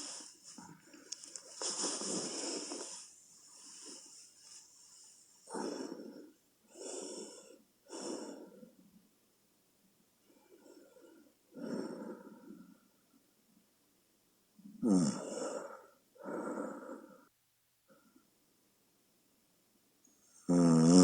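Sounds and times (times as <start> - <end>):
woman snoring: 1.6 - 3.0, 14.8 - 17.2, 20.5 - 21.0.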